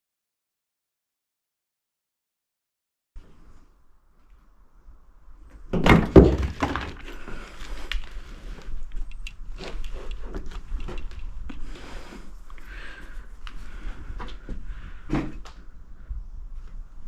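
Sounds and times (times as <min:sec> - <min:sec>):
footsteps on debris-strewn wooden floor: 0:05.8 - 0:12.3.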